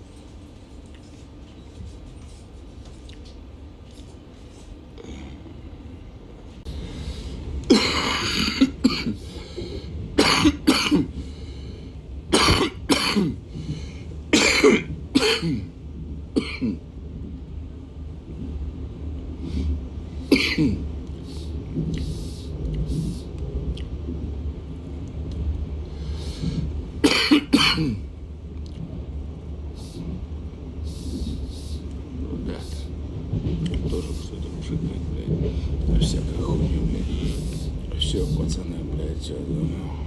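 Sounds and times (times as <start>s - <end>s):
electric train rumble: 0.0s - 40.0s
man coughing: 7.7s - 9.2s, 10.2s - 11.2s, 12.3s - 13.4s, 14.3s - 15.7s, 16.4s - 16.8s, 20.3s - 20.8s, 27.0s - 28.1s.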